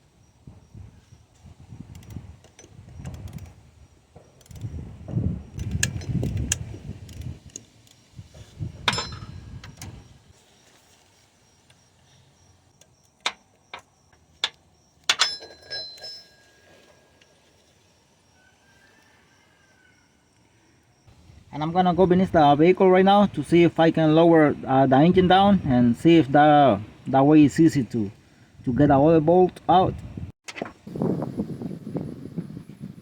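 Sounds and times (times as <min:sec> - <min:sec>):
ratchet rattling and scraping on metal: 0:01.9 - 0:04.8, 0:05.6 - 0:10.0, 0:12.7 - 0:17.7
sharp metallic clinks: 0:08.8 - 0:09.8, 0:13.2 - 0:17.4.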